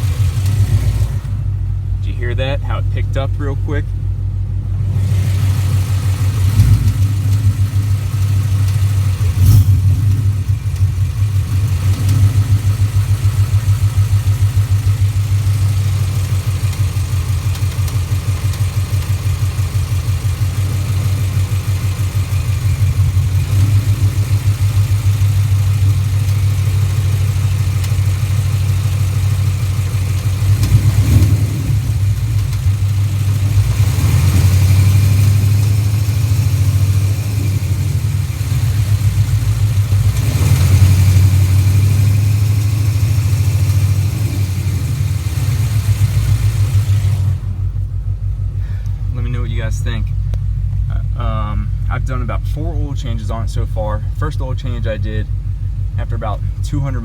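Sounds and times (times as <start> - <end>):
car engine ticking: 0.0 - 57.0.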